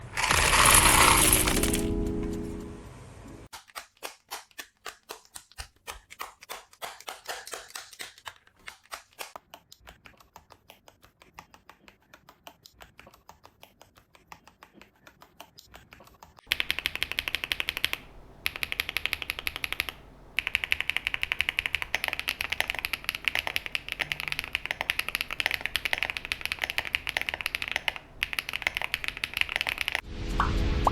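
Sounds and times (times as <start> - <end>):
mechanical keyboard typing: 0.0 - 2.6, 16.5 - 30.0.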